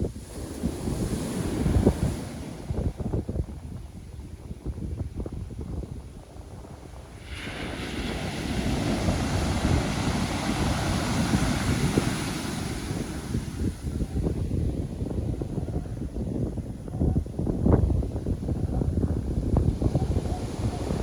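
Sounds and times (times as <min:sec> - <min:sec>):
wind buffeting microphone: 0:00.0 - 0:21.0
ocean wave breaking: 0:07.0 - 0:14.2.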